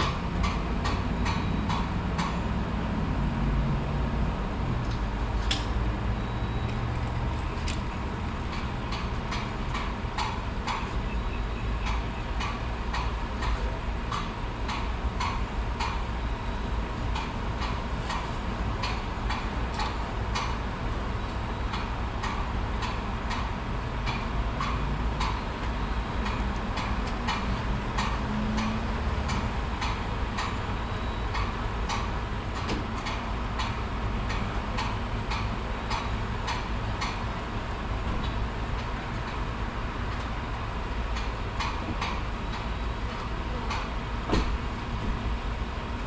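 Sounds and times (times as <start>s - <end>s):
engines idling: 0.0s - 46.0s
regular mechanical ticking: 21.2s - 37.5s.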